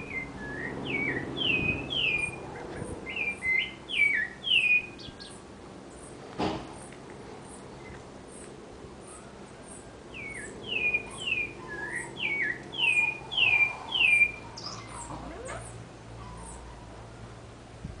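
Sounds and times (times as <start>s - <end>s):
thrush singing whistled notes: 0.0s - 2.4s, 3.0s - 5.4s, 9.1s - 15.8s.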